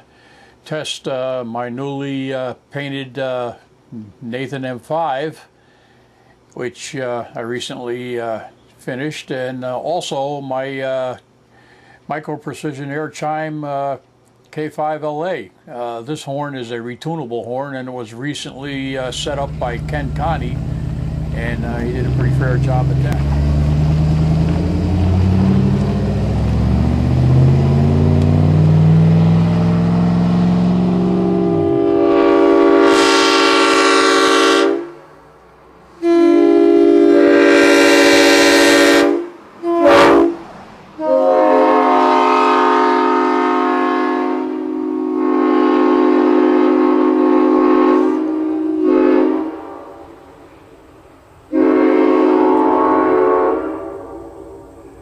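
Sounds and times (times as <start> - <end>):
low motor humming: 18.5 - 32.0
locomotive air horn blasts: 18.6 - 23.0, 30.8 - 35.0, 36.0 - 50.1, 51.5 - 54.9.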